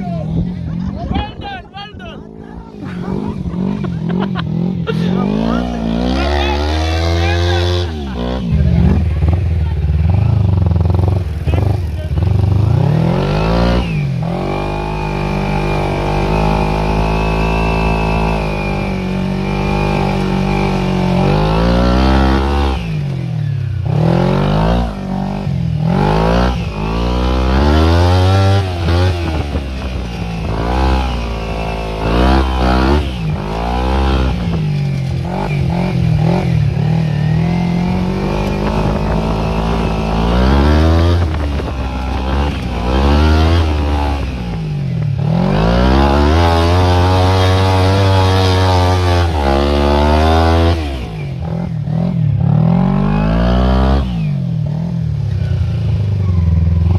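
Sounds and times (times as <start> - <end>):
small petrol engine revving: 2.3 - 56.9.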